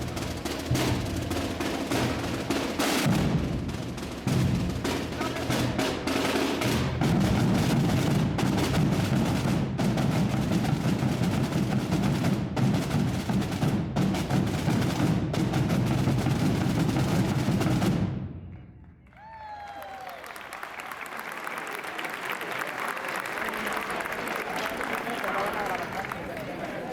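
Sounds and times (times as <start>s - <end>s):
massed drums rolling: 0.0s - 18.4s.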